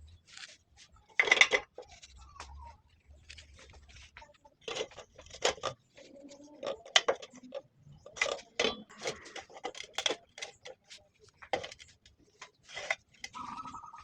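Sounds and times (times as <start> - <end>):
hand tools knocking and clinking: 8.1 - 11.9.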